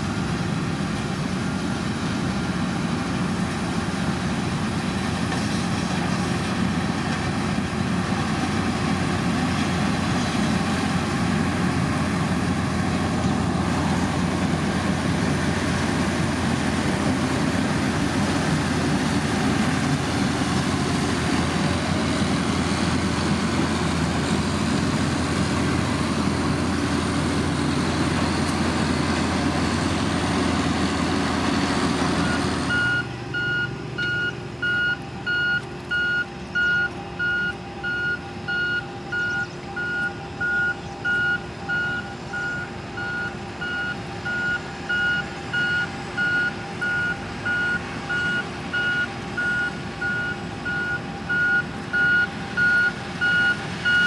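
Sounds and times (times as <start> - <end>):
diesel engine running: 0.0 - 54.0
reversing alarm beeping: 32.2 - 54.0.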